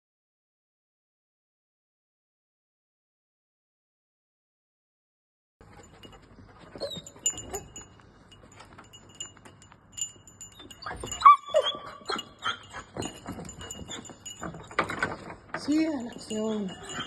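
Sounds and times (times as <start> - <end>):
small clicks and rustles: 5.6 - 11.3, 12.1 - 17.0
light metallic jingling: 5.6 - 17.0
dog yelping: 6.6 - 7.8, 10.6 - 15.0, 16.5 - 17.0.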